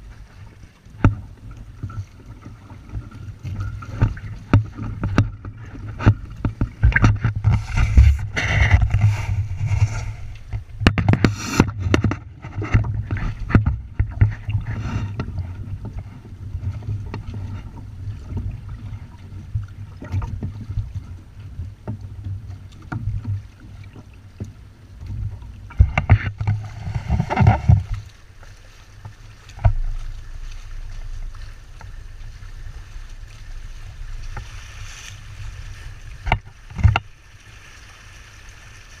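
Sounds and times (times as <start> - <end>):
wind buffeting microphone: 0.0 - 24.0
water splashing against hull: 0.0 - 39.0.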